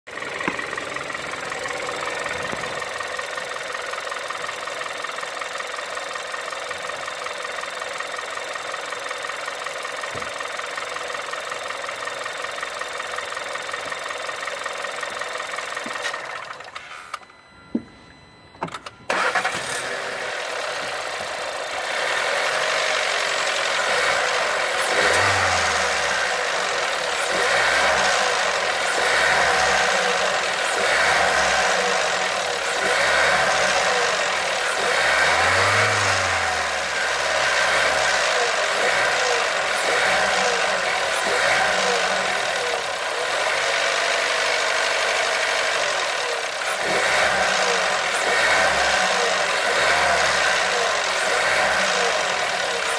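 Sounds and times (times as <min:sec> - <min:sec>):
engine knocking: 0:00.0 - 0:16.8, 0:20.1 - 0:52.9
car engine revving: 0:19.1 - 0:52.9.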